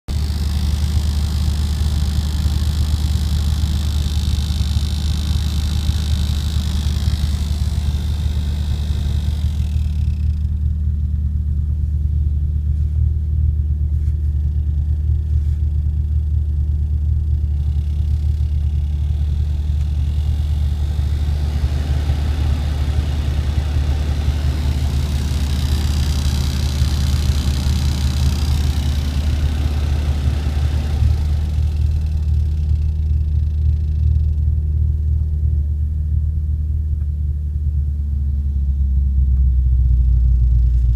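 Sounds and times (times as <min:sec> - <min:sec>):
steady low rumble: 0:00.1 - 0:40.9
high-pitched heater noise: 0:18.6 - 0:32.3.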